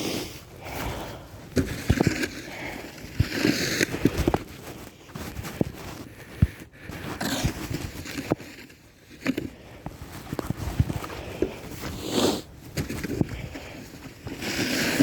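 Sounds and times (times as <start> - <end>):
shovel scraping snow: 1.6 - 15.0.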